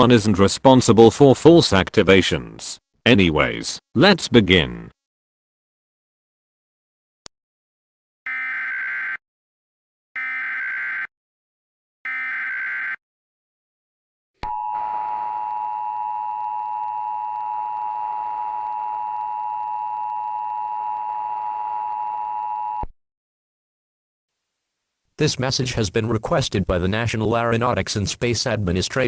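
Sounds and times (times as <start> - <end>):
two-tone attention signal: 14.5 - 22.7.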